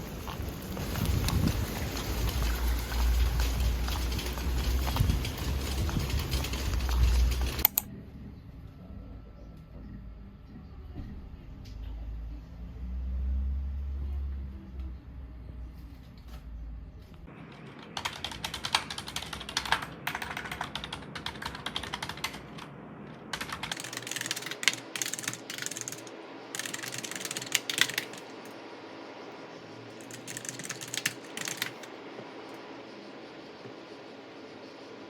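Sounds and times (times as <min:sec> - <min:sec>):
typing on keyboard: 0:02.2 - 0:07.9, 0:17.5 - 0:28.5, 0:30.0 - 0:31.9.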